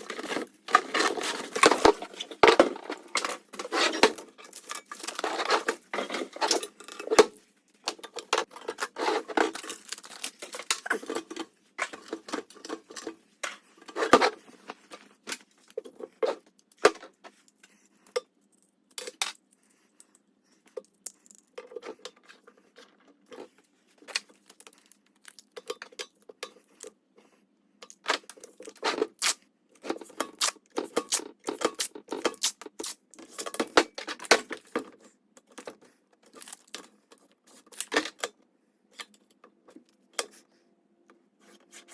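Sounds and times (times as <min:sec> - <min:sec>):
small hard parts clattering: 0:00.0 - 0:17.4, 0:29.8 - 0:38.4.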